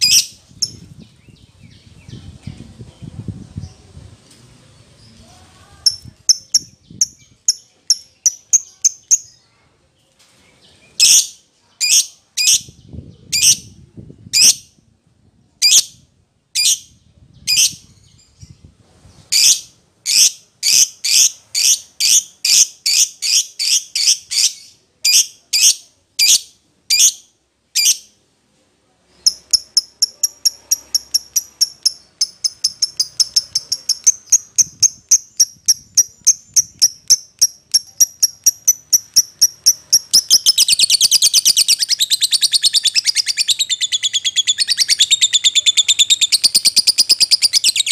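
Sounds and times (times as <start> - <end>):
lovebird chirping: 0.0 - 2.6, 5.0 - 9.5, 29.1 - 47.9.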